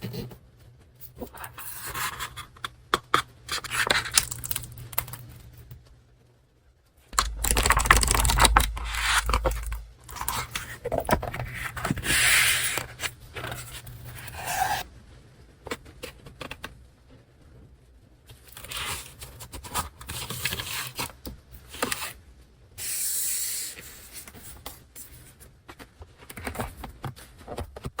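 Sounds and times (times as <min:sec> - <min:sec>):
paper rustling and tearing: 0:07.2 - 0:14.8.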